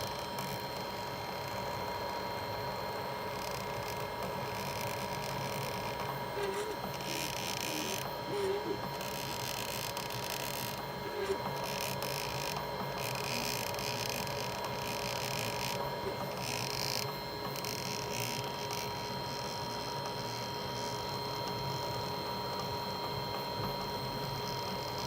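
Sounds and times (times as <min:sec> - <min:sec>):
steady tonal hum: 0:03.1 - 0:17.3.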